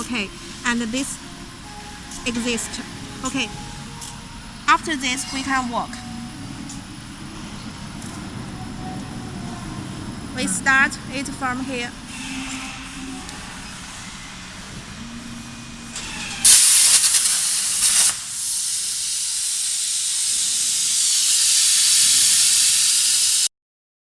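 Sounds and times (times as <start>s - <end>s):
low machine noise: 0.0s - 22.8s
plasma torch hissing: 16.0s - 23.5s.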